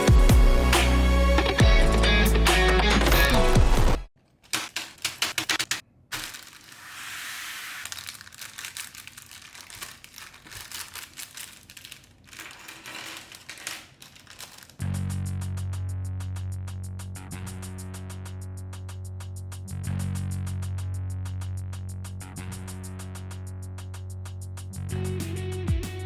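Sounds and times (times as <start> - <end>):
packaging clicks: 4.2 - 14.8
packaging rustling and crinkling: 4.2 - 14.8.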